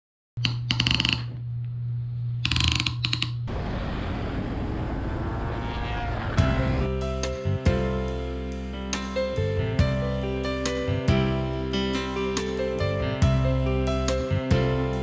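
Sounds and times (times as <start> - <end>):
low hum: 0.4 - 15.0
steady noise: 3.4 - 15.0.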